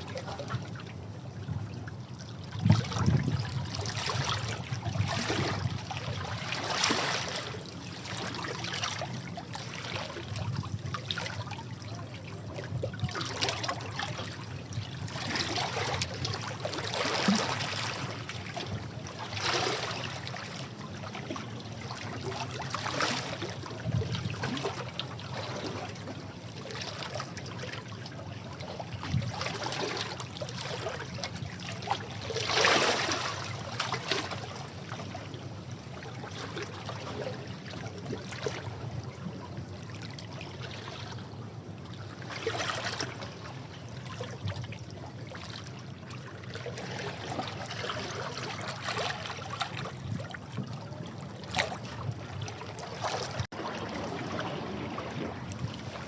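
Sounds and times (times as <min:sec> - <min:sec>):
sea waves breaking over rocks: 0:46.8 - 0:56.0.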